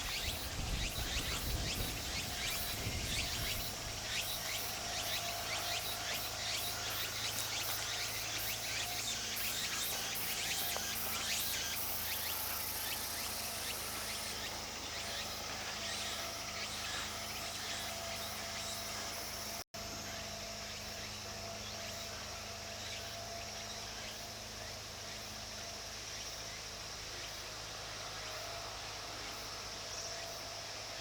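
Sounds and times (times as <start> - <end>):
insects hissing: 0.0 - 31.0.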